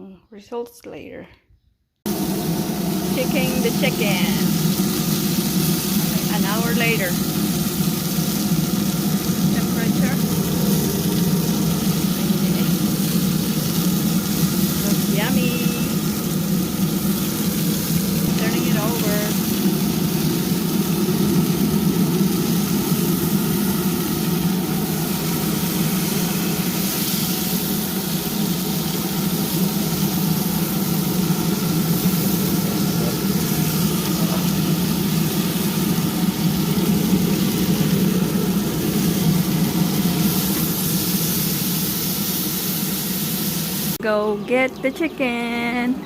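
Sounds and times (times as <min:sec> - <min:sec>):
grill combustion fan humming: 0:02.0 - 0:46.0.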